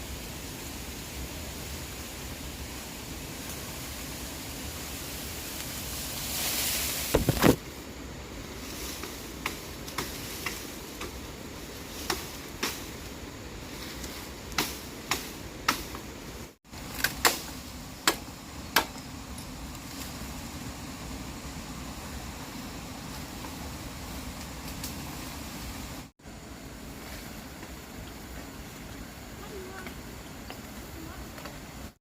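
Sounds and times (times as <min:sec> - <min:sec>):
steady hiss: 0:00.0 - 0:32.0.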